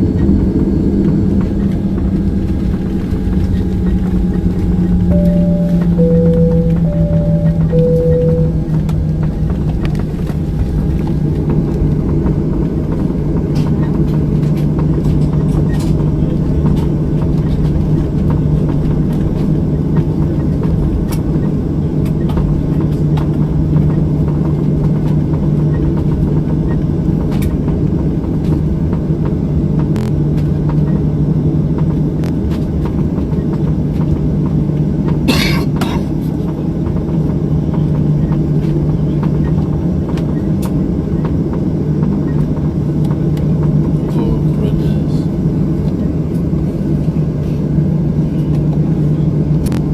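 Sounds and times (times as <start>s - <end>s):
airliner cabin engine drone: 0.0s - 49.9s
low hum: 1.3s - 13.9s.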